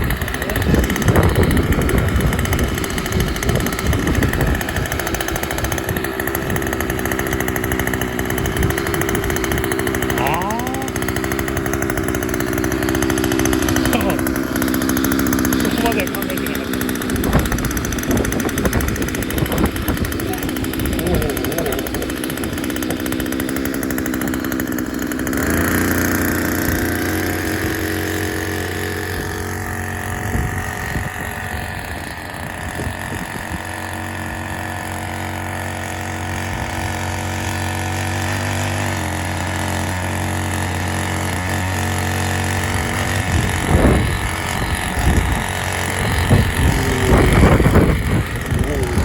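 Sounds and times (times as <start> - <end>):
small engine running: 0.0 - 49.0.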